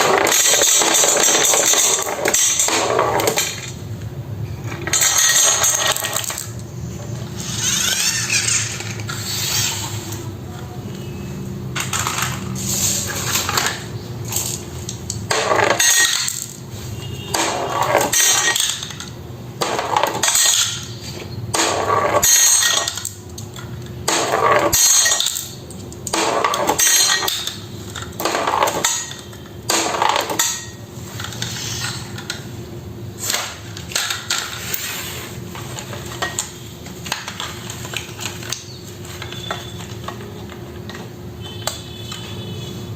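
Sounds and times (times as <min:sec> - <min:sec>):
marbles rattling down wooden run: 0:07.4 - 0:09.4.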